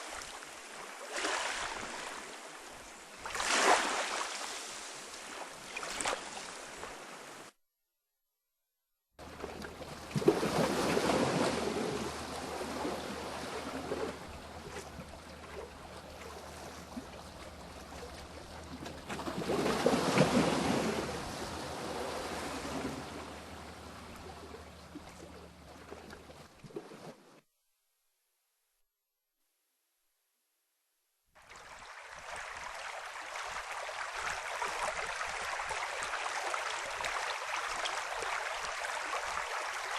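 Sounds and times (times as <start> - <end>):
waves washing in: 0.0 - 7.6, 9.2 - 27.3.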